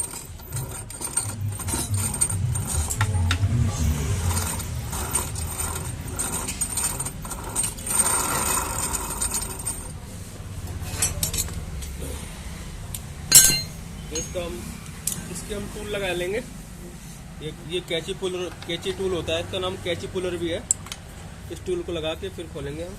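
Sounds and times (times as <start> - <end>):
metal tools clinking: 0.0 - 10.0, 10.7 - 12.0, 13.3 - 15.3
low mechanical rumble: 0.0 - 20.7
loud metallic clank: 13.3 - 14.4.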